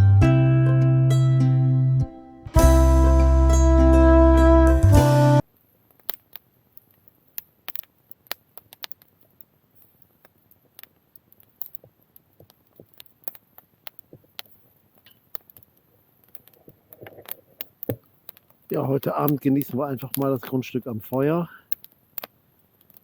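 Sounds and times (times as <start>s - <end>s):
campfire crackling and popping: 5.5s - 23.0s.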